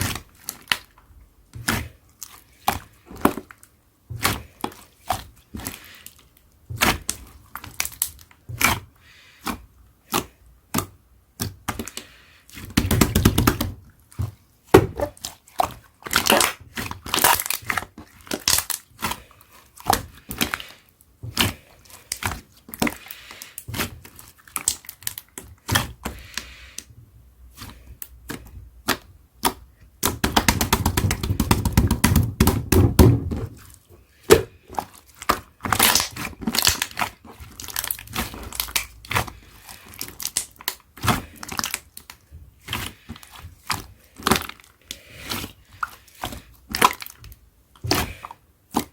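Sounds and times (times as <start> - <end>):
slime squishing crackle: 12.6 - 26.3, 33.4 - 48.9.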